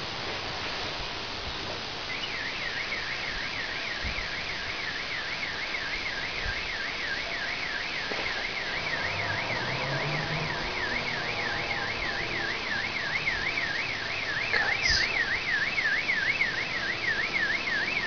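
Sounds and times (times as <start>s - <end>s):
car alarm siren warbling: 2.0s - 18.0s
steady background hiss: 11.0s - 18.0s.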